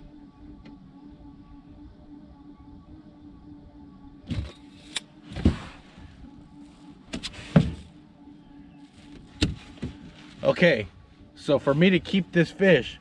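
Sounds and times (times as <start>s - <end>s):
faint steady hum: 0.0s - 13.0s
thump: 7.1s - 7.9s.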